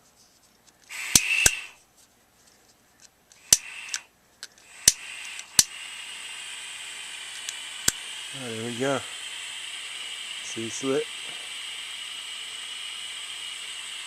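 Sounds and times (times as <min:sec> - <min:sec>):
igniter clicks: 0:00.8 - 0:01.7, 0:03.3 - 0:05.8, 0:07.1 - 0:09.1
gas torch hissing: 0:00.9 - 0:01.8, 0:03.4 - 0:14.0.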